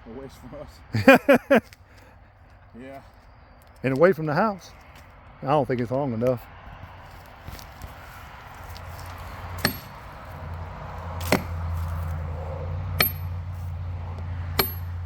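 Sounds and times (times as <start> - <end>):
hammer striking steel wedge: 9.6 - 10.0, 11.2 - 11.6, 13.0 - 13.4, 14.5 - 15.0.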